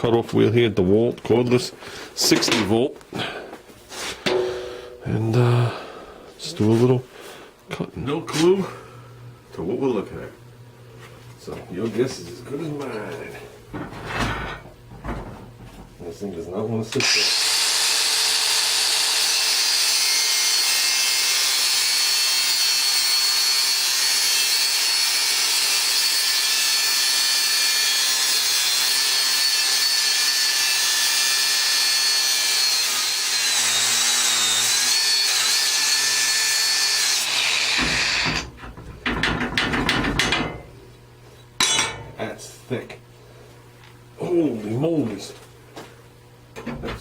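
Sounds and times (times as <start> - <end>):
metal clanks: 4.2 - 5.0, 37.8 - 40.7, 41.6 - 42.2
cutoff tool cutting steel: 17.0 - 38.5.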